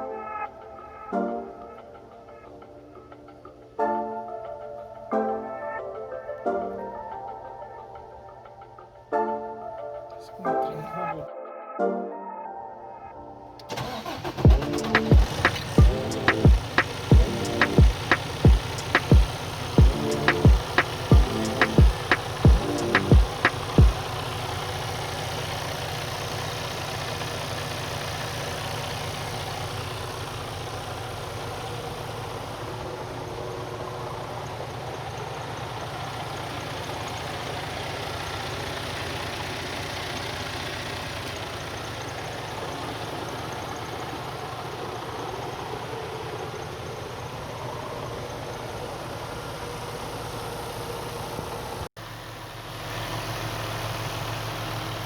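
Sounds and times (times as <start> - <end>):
diesel engine idling: 13.6 - 55.0.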